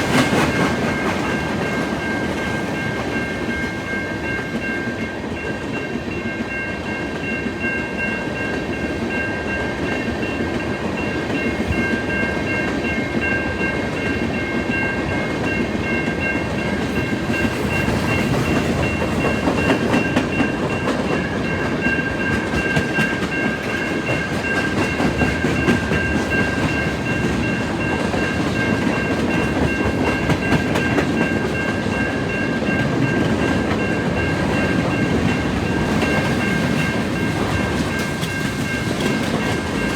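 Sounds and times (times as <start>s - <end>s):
train wheels clicking over rail joints: 0.0s - 3.8s, 15.5s - 39.9s.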